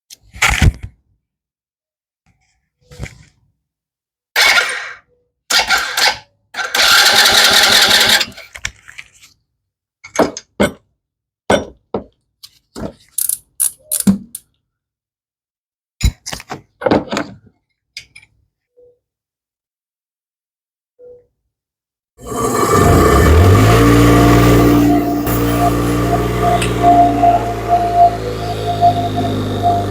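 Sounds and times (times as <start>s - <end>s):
small engine cranking on starter: 5.6s - 8.4s, 22.2s - 29.9s.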